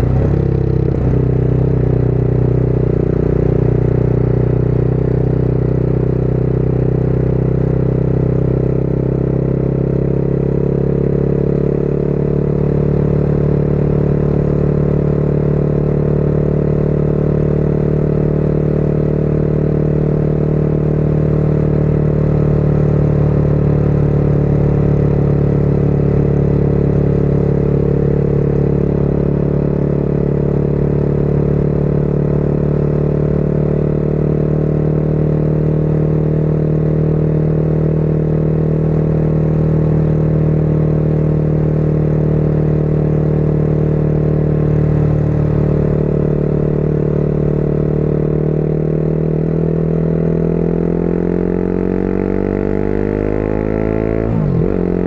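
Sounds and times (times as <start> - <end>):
wind and road noise: 0.0 - 7.3
motorcycle engine cruising: 0.0 - 55.0.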